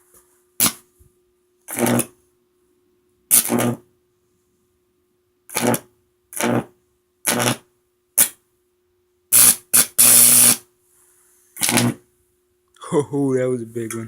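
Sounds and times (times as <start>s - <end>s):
faint transformer hum: 0.0s - 14.0s
electric arcs buzzing: 0.6s - 0.8s, 1.7s - 2.2s, 3.3s - 3.8s, 5.5s - 6.7s, 7.3s - 8.4s, 9.3s - 10.6s, 11.6s - 12.0s.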